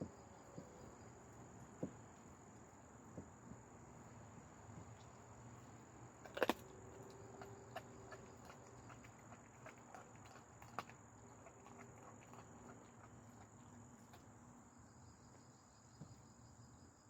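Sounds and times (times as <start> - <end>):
dog crunching chicken: 6.2 - 14.4.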